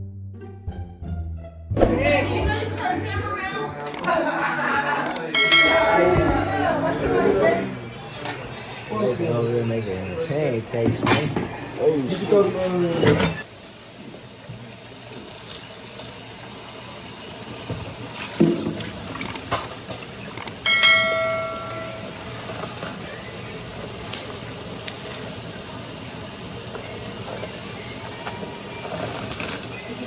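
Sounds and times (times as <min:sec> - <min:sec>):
steady hiss: 0:04.0 - 0:30.0
ringing metallic strike: 0:05.4 - 0:06.2, 0:20.7 - 0:22.3.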